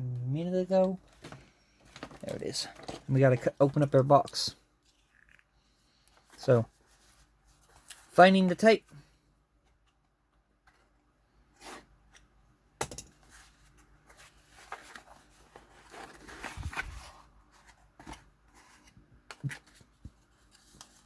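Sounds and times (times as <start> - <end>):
cardboard rustling: 0.8 - 5.3, 13.2 - 21.0.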